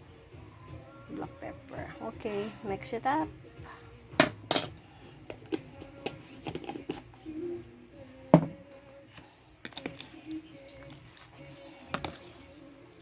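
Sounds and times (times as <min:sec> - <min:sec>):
spoon clinking and scraping bowl: 0:09.6 - 0:13.0.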